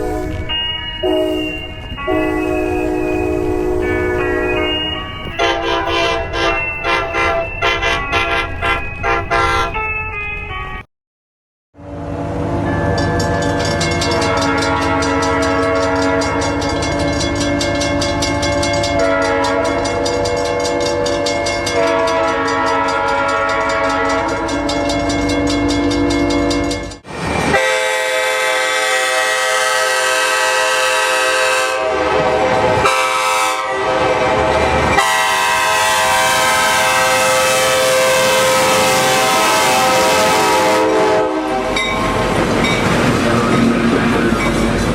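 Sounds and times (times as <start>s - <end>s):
locomotive air horn: 0.0s - 9.9s, 14.1s - 16.5s, 19.0s - 21.0s, 21.7s - 25.0s, 27.5s - 41.9s
second horn blasts: 5.4s - 9.8s, 35.0s - 41.7s.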